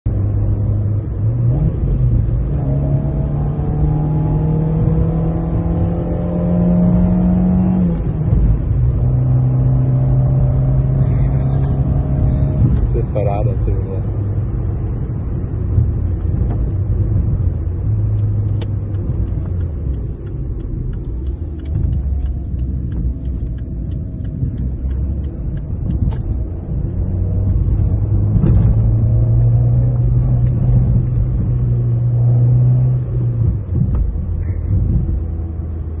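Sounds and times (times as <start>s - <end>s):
car engine running: 6.8s - 35.4s.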